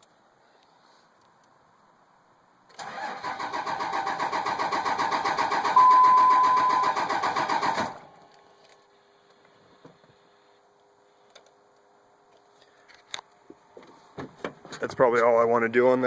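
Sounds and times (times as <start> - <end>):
starter cranking diesel engine: 2.8 - 8.0
steady high tone: 5.8 - 7.1.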